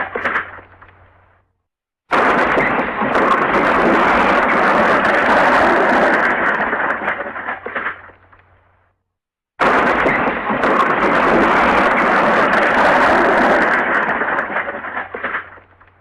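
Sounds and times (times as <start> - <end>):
loud crashing smash: 2.1 - 8.0, 9.6 - 15.6.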